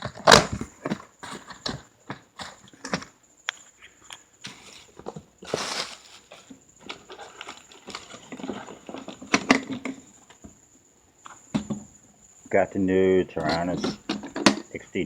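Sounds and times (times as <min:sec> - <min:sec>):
packaging rustling: 0:00.0 - 0:10.5.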